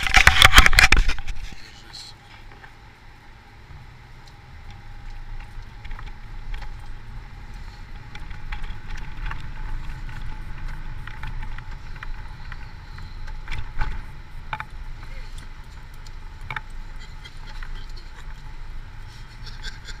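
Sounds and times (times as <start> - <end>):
small rattles and clicks: 0.0 - 1.6, 4.2 - 20.0.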